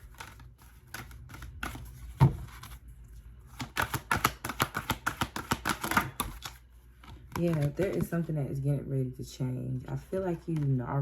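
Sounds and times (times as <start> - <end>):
cards thumping: 0.0 - 2.8, 3.5 - 8.3
cards shuffling snapping clicks: 3.5 - 8.0.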